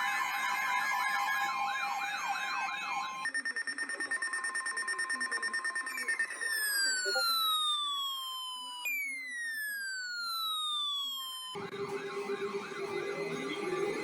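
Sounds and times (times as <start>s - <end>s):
electronic siren warbling: 0.0s - 3.2s, 6.0s - 14.0s
pulsing alarm tone: 0.0s - 14.0s
falling electronic tone: 6.4s - 14.0s.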